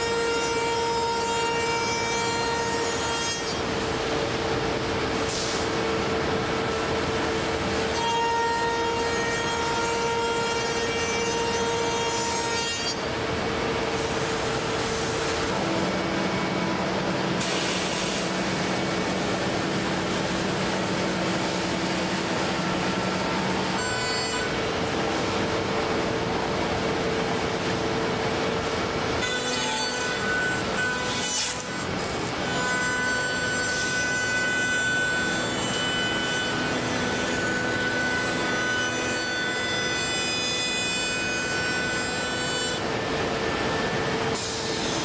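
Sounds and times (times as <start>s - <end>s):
machine cutting wood: 7.6s - 25.4s, 29.2s - 45.0s.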